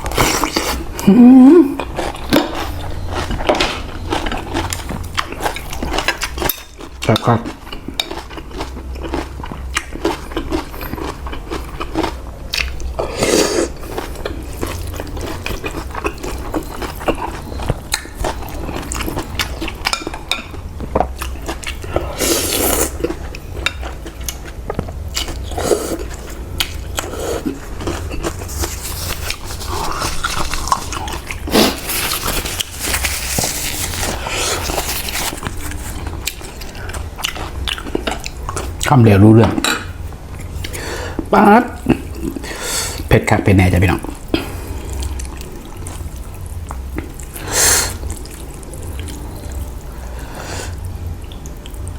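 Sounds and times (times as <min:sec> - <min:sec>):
steady low hum: 0:00.0 - 0:51.9
chewing and biting: 0:01.7 - 0:38.9
slurping noodles: 0:28.4 - 0:36.1.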